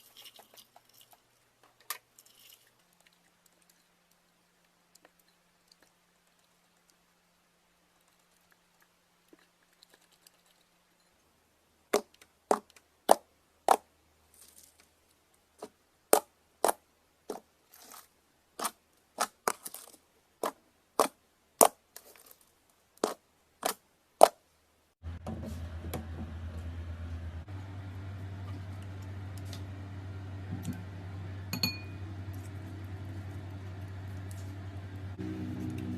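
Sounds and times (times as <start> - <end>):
steady low hum: 25.0 - 35.9.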